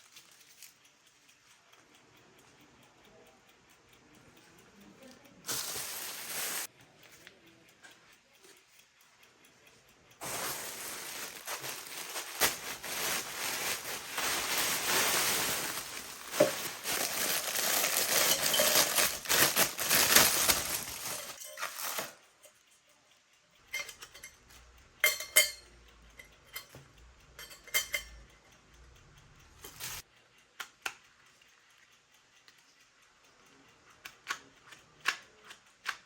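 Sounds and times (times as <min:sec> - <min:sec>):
dishes and cutlery clattering: 0:10.2 - 0:22.1, 0:25.0 - 0:25.6, 0:27.4 - 0:28.2.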